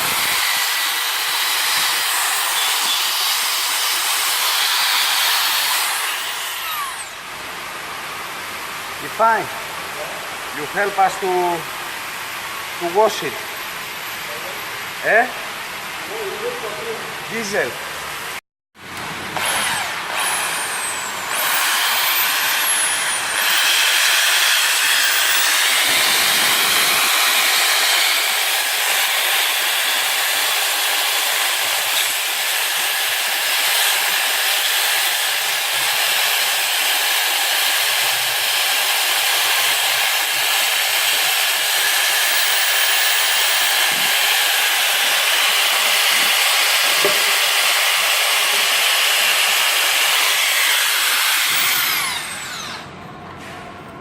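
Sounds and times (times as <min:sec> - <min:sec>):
cleaning tool loud hiss: 0:00.0 - 0:07.2, 0:19.4 - 0:52.6.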